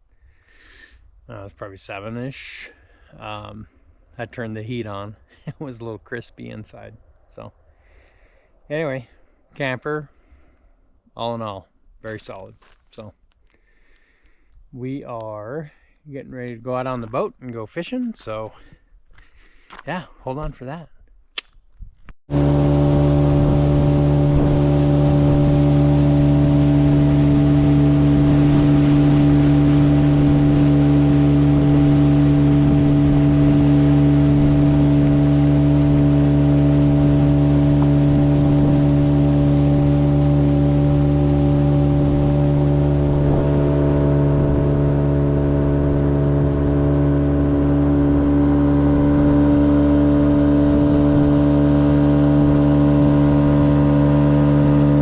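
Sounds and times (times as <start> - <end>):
outboard motor running: 22.3 - 55.0.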